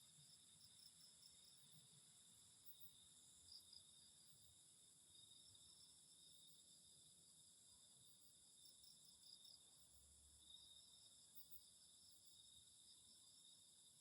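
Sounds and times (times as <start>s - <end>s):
crickets chirping: 0.0s - 14.0s.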